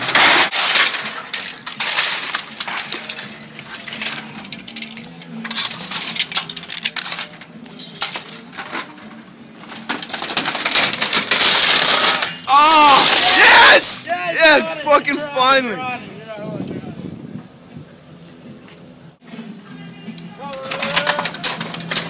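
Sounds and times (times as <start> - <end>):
small metal objects clinking: 0.0 - 13.7.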